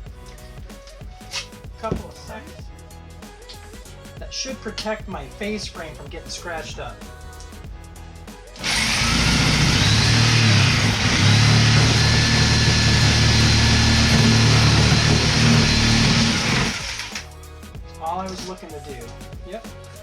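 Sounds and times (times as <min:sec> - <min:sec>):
power saw cutting wood: 0:08.6 - 0:17.3.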